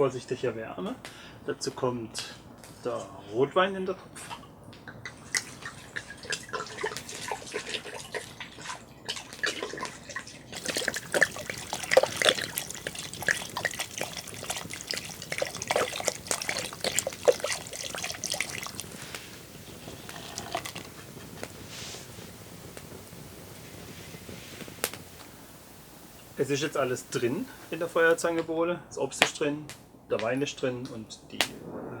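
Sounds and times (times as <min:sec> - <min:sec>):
small clicks and drips: 0:04.2 - 0:28.2
wine pouring into a pot: 0:05.4 - 0:28.3.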